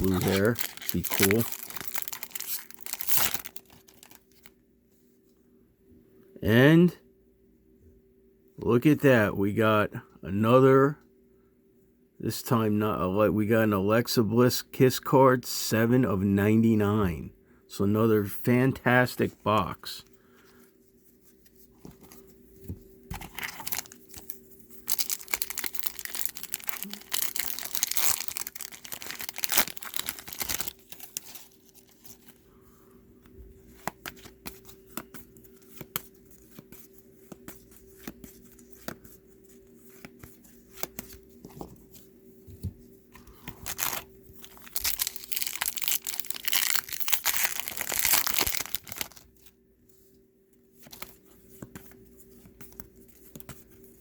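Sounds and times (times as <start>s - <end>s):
foil wrappers tearing and crinkling: 0.0s - 4.5s, 23.2s - 32.3s, 43.6s - 49.4s.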